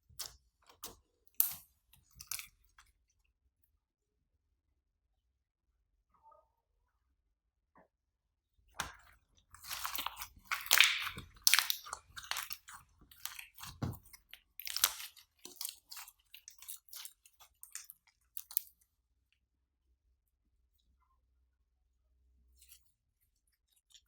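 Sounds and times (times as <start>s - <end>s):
slime crackling and popping: 9.6s - 18.7s.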